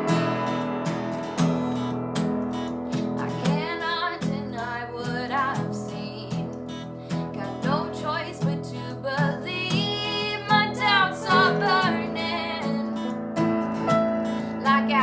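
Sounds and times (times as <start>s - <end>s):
strummed acoustic guitar: 0.0s - 15.0s
person singing: 7.4s - 13.2s, 14.5s - 15.0s.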